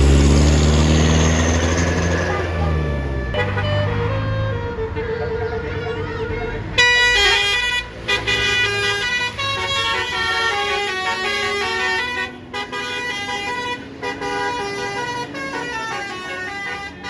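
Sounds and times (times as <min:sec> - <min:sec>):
bus air horn melody: 0:01.6 - 0:17.0.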